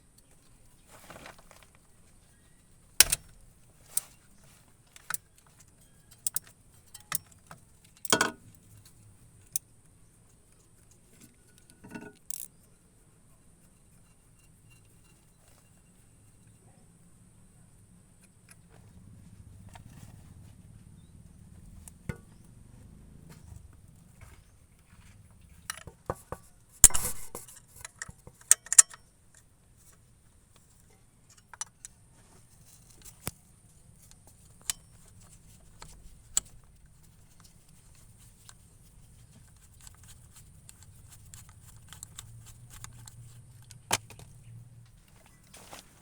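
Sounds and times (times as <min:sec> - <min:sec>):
faint steady hum: 0:00.0 - 0:46.0
metallic clinks and knocks: 0:05.0 - 0:09.0, 0:11.5 - 0:12.6.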